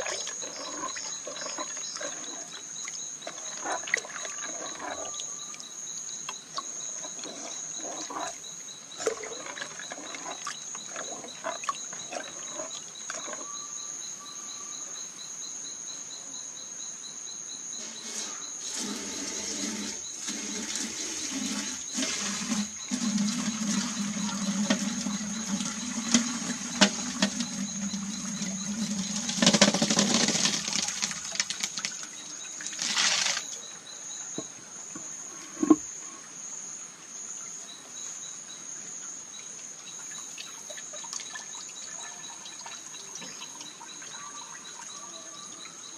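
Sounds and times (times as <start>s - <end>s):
fast pulsing insect trill: 0.0s - 34.4s
insects trilling: 0.0s - 45.9s.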